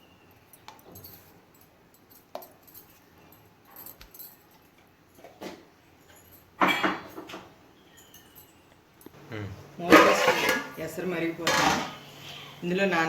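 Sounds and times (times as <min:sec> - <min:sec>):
metal utensils clinking on pot: 0:09.8 - 0:12.3.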